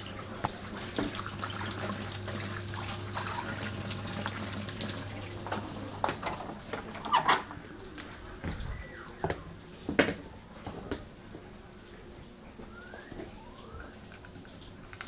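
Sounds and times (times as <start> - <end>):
tap running into sink: 0.0 - 7.6, 8.4 - 11.5.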